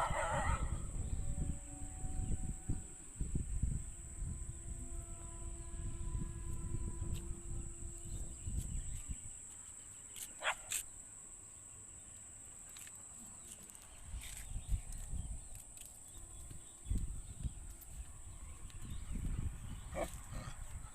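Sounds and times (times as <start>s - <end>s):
dog barking: 0.0s - 0.8s, 10.4s - 10.7s
high-pitched whine: 0.0s - 9.8s.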